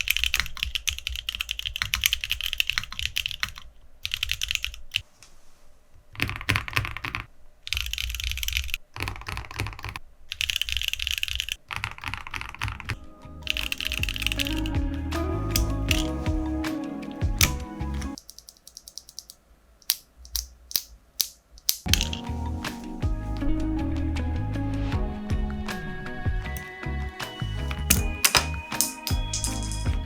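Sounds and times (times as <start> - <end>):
mechanical keyboard typing: 0.0 - 5.0, 6.2 - 14.8, 17.4 - 22.2.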